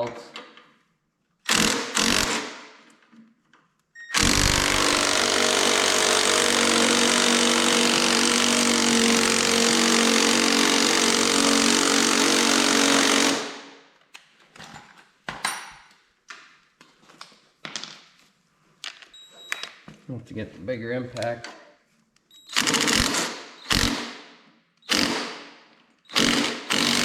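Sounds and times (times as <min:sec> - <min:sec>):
impact wrench hammering: 0:01.5 - 0:02.8, 0:04.2 - 0:13.7, 0:22.6 - 0:24.3, 0:24.9 - 0:27.0.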